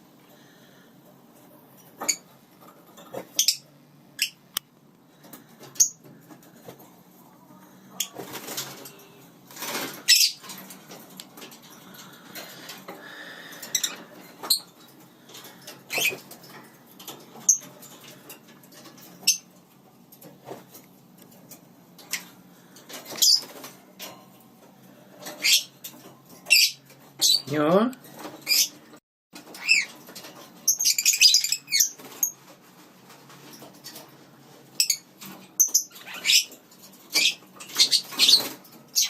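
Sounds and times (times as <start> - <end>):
parakeets chirping: 3.1 - 4.5, 9.6 - 10.7, 11.8 - 14.8, 15.4 - 16.5, 22.9 - 23.7, 25.2 - 25.8, 26.4 - 27.6, 28.2 - 28.8, 29.4 - 30.0, 30.6 - 32.4, 34.7 - 39.0.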